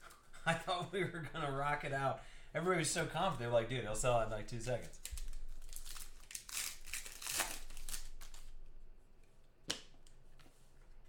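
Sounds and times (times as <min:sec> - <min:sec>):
plastic wrapper crinkling and tearing: 0:04.8 - 0:08.7.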